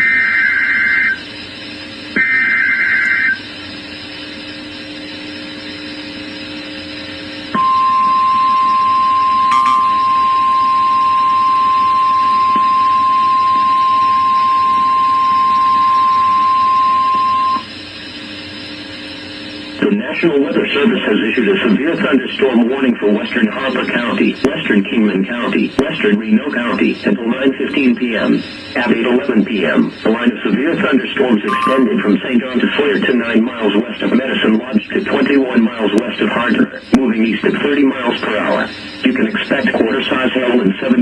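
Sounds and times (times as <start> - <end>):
radio hiss: 0.0 - 7.6, 14.8 - 41.0
steady warning alarm tone: 0.0 - 24.3, 31.4 - 33.2
low hum: 0.5 - 17.6.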